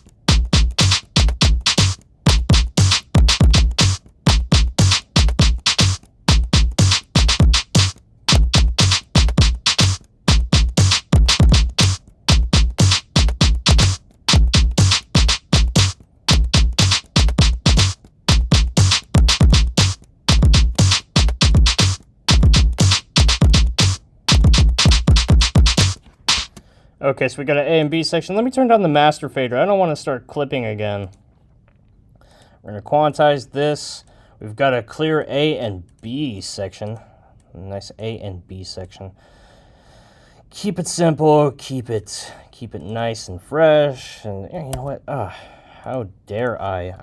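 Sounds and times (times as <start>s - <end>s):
drum machine beat: 0.0s - 26.6s.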